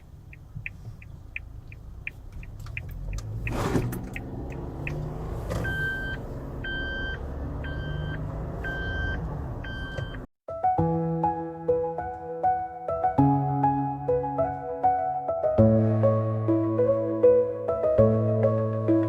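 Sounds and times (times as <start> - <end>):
car engine running: 0.0 - 9.7
two-tone electronic beep: 5.6 - 10.3.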